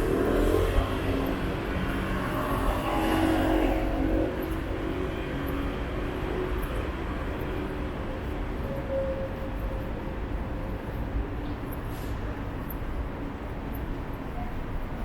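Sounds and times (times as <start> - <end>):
cars driving past: 0.0 - 7.3.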